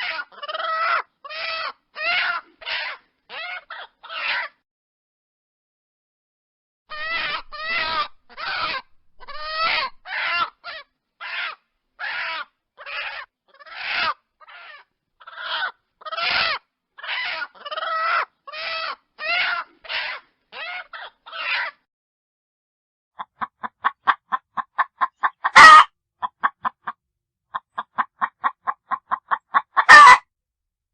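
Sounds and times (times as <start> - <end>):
chicken squawking: 0.0 - 4.6, 6.9 - 21.8, 23.2 - 26.9, 27.5 - 30.2.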